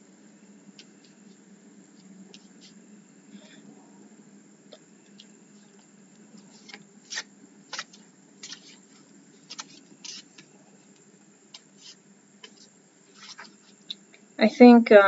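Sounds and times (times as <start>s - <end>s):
faint low hum: 0.0s - 15.0s
cards flicking and rustling: 6.3s - 14.0s.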